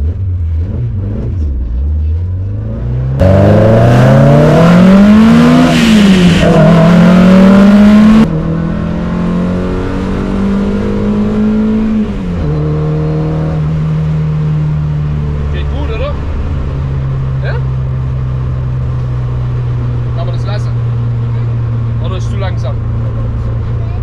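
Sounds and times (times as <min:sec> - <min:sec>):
car engine revving under full throttle: 0:00.0 - 0:24.0.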